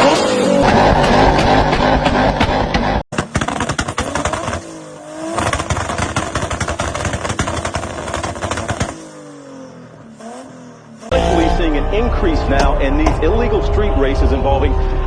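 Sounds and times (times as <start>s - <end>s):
exhaust crackling and popping: 0.0s - 9.1s
car engine revving: 0.0s - 15.0s.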